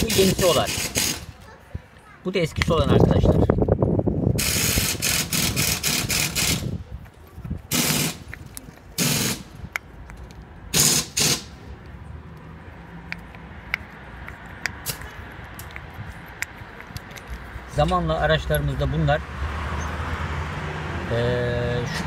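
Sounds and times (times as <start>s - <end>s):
ball joint rattling and scraping: 7.7s - 11.5s, 13.0s - 19.0s.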